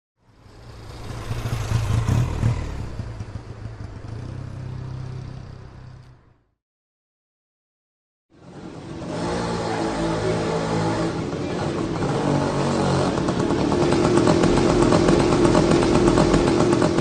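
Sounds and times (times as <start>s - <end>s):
motor scooter engine running: 9.7s - 17.0s
clatter: 12.8s - 17.0s.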